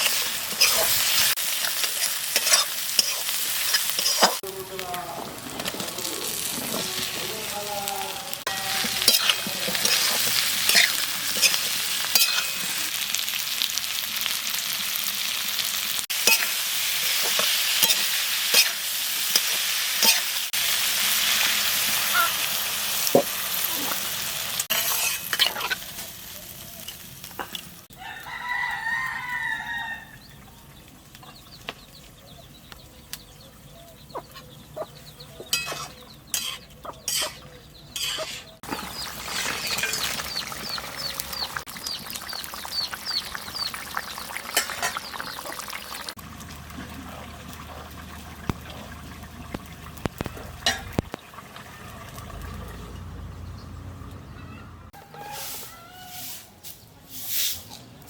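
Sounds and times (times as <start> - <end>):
food sizzling in a pan: 0.0 - 30.1, 38.0 - 52.4
rooster crowing: 27.9 - 30.2, 55.0 - 56.3.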